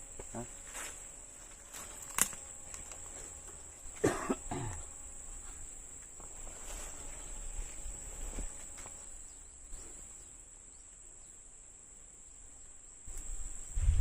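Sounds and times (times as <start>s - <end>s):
insects chirring: 0.0s - 14.0s
person coughing: 4.0s - 4.9s.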